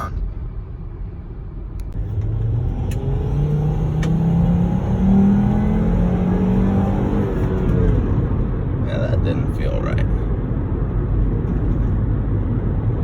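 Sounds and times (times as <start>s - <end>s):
car engine accelerating: 1.9s - 9.3s.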